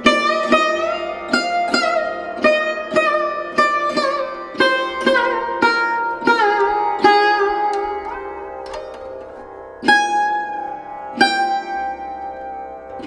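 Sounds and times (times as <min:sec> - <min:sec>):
plucked string instrument: 0:00.0 - 0:13.0.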